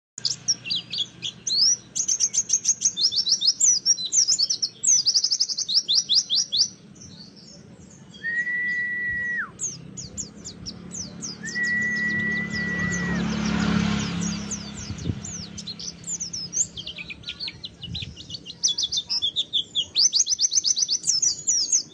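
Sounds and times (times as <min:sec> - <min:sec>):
bird long steady whistles: 0:08.1 - 0:09.7, 0:11.3 - 0:17.4.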